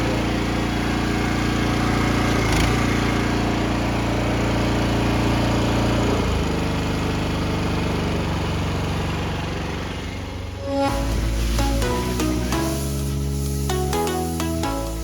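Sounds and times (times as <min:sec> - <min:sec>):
pressure washer engine running: 0:00.0 - 0:10.3, 0:10.9 - 0:15.0.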